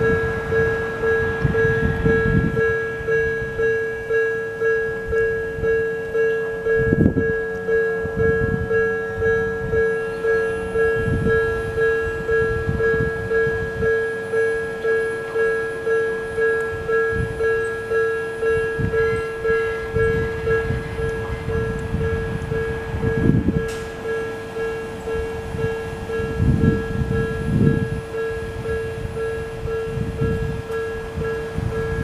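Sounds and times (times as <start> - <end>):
level-crossing warning bell: 0.0 - 32.0
low rumbles: 0.0 - 32.0.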